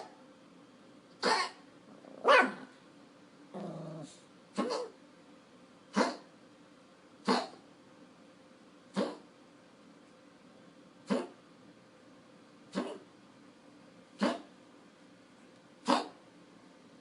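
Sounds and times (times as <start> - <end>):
dog reverse sneezing: 1.2 - 1.6, 4.5 - 5.0, 5.9 - 6.3, 7.2 - 7.6, 8.9 - 9.3, 11.0 - 11.4, 12.7 - 13.1, 14.2 - 14.5, 15.8 - 16.2.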